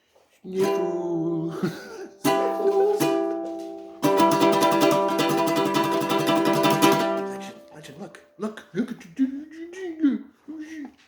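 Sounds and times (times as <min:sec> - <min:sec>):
person singing: 0:00.4 - 0:07.9
strummed string instrument: 0:00.5 - 0:08.4.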